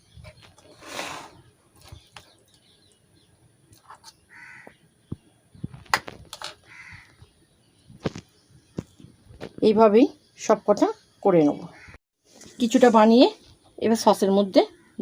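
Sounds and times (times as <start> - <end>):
crow cawing: 4.3 - 4.8, 6.6 - 7.2, 11.7 - 12.0.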